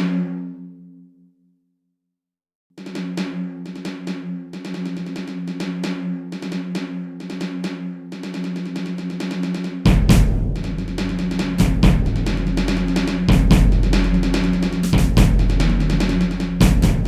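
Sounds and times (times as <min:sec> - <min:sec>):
heavy bass and drum kit: 0:09.9 - 0:17.0
snare drum hits: 0:09.9 - 0:17.0.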